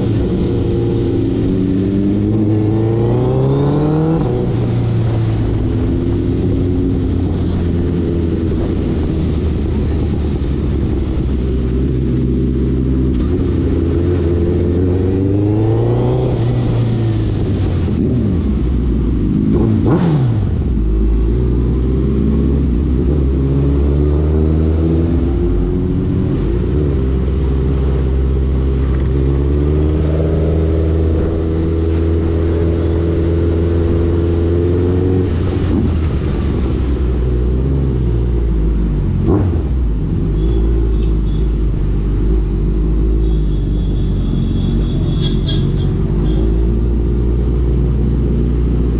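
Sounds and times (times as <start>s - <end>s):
motorcycle engine revving: 0.0s - 48.9s.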